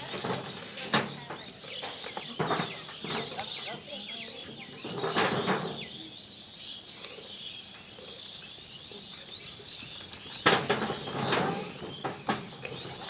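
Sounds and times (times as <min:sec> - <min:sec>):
animals scuffling: 0:00.0 - 0:06.1, 0:09.0 - 0:13.0
faint bird chirping: 0:00.0 - 0:13.0.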